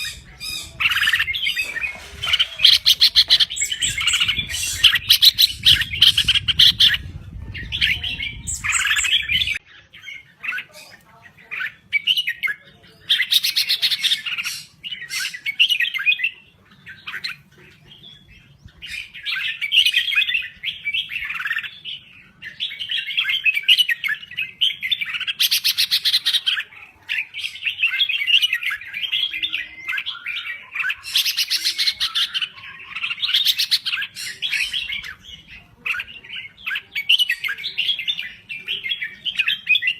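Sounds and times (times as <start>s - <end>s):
bird chirping phrases: 0.0s - 39.9s
low rumble: 3.6s - 9.6s.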